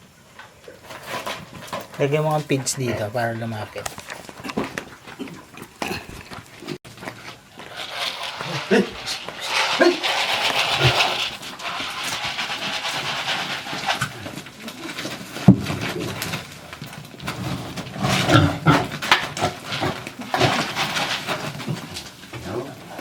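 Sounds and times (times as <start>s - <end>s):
rustling: 0.0s - 23.0s
farm animals calling: 2.4s - 6.8s.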